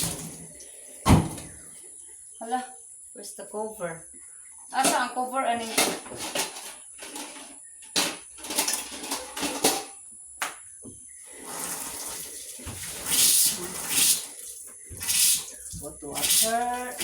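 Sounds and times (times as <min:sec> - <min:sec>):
water pouring into pot: 0:00.0 - 0:01.0, 0:11.2 - 0:17.0
pot and utensils clattering: 0:04.8 - 0:10.0.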